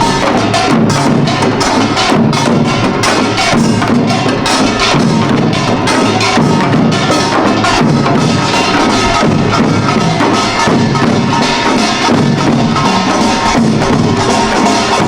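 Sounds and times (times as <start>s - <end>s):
drums beating: 0.0s - 15.0s
small gongs clanging: 0.0s - 15.0s.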